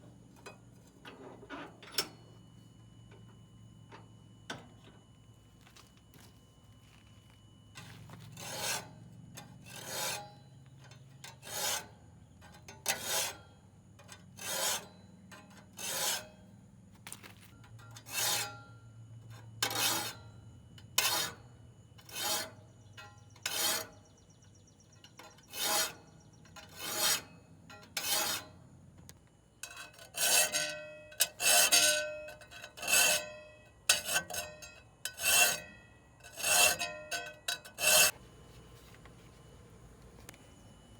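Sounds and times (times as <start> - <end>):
metal file sharpening saw blade: 11.4 - 11.9, 14.4 - 14.9, 15.8 - 16.3, 25.5 - 26.0, 26.7 - 27.3, 28.0 - 28.5, 29.6 - 38.1.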